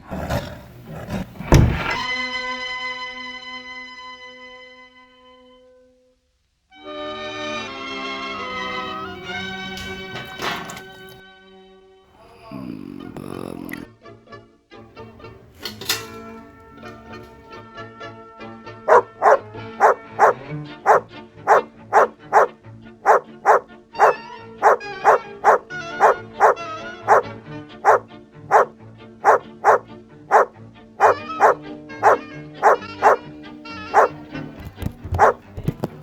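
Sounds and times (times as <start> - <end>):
dog barking: 0.0 - 2.1, 8.4 - 11.2, 15.0 - 17.6, 18.9 - 36.0.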